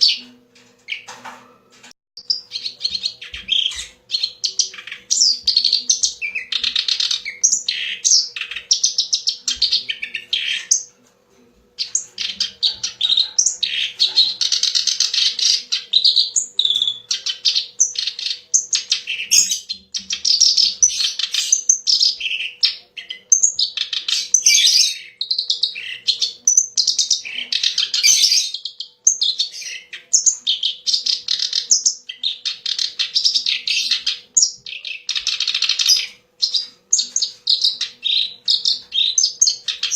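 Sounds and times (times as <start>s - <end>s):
warbler singing chattering song: 2.2s - 10.9s, 11.8s - 39.9s.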